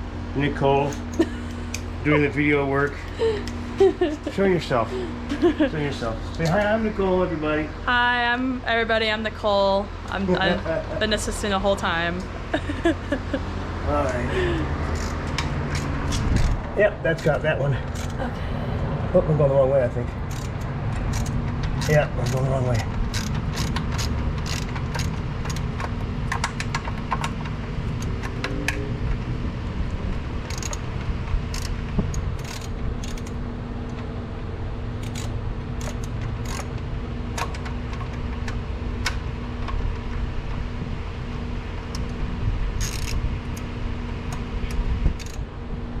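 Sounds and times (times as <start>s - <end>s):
steady low hum: 0.0s - 46.0s
metallic tool clicks and clinks: 35.0s - 36.7s.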